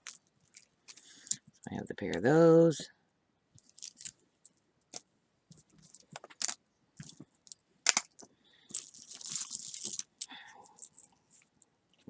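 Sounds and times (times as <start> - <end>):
jewelry jangling rattle: 8.7 - 10.0.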